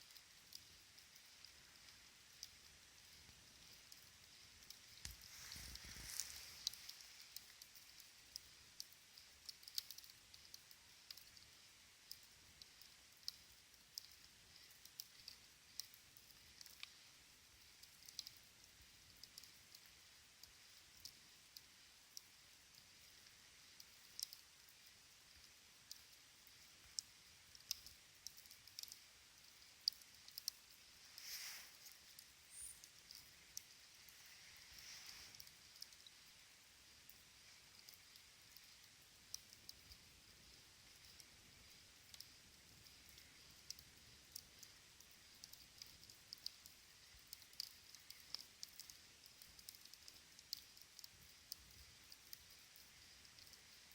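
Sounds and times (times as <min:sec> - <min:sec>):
campfire crackling: 0:00.0 - 0:53.9
fire pops and snaps: 0:04.6 - 0:11.4.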